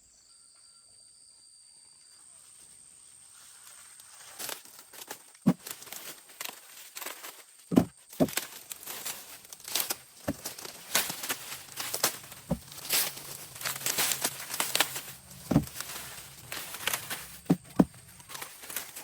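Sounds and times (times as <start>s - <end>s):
rustling and crackling: 3.4s - 19.0s
sharp knocks: 15.5s - 15.8s.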